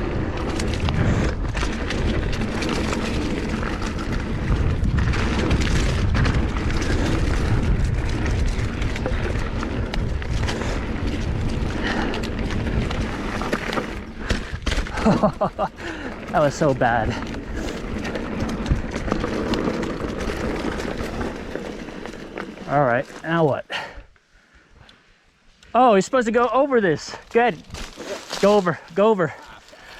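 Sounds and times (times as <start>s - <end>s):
wind buffeting microphone: 0.0s - 22.2s
bike knocking and rattling: 0.0s - 23.6s
tyres on dirt: 0.0s - 24.2s, 25.5s - 29.9s.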